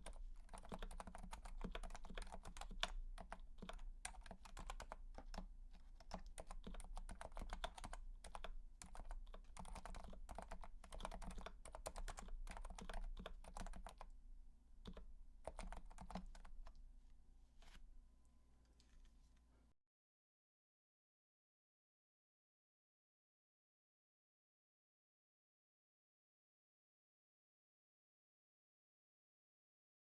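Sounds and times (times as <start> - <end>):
typing on a keyboard: 0.0 - 14.1, 14.8 - 16.8.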